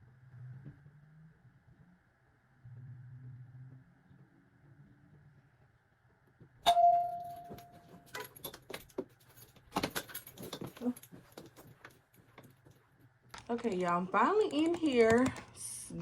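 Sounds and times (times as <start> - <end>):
sharp metallic clink: 6.7 - 8.4
light clicks and clatters: 7.3 - 16.0.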